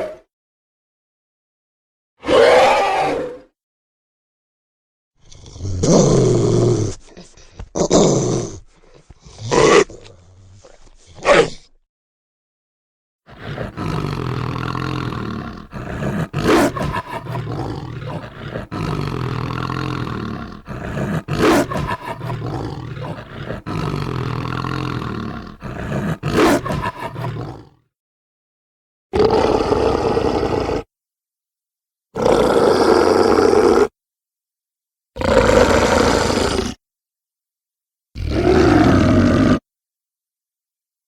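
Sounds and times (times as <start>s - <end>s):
sharp snarl: 2.2s - 3.5s, 13.3s - 27.7s
deep rough growl: 13.3s - 27.7s
rough roar: 13.3s - 27.7s, 38.2s - 39.6s.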